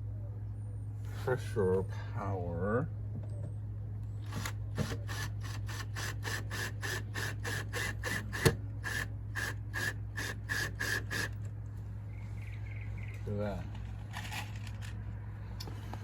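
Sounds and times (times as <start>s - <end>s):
power drill clicking: 4.3s - 11.4s.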